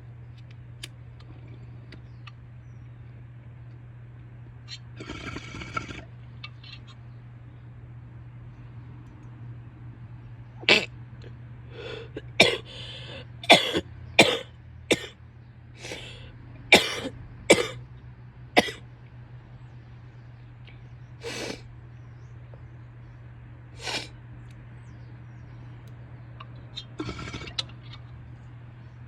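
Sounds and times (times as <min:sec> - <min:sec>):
woman coughing: 0:12.4 - 0:12.7, 0:13.4 - 0:15.1, 0:16.7 - 0:17.8, 0:18.6 - 0:18.8.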